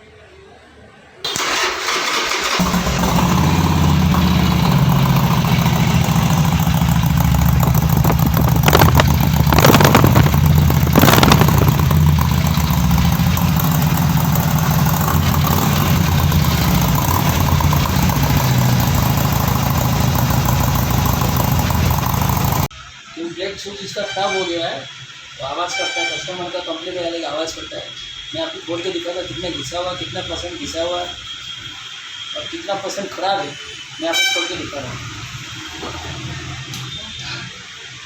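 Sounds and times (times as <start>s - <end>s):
motorcycle engine idling: 2.5s - 22.7s.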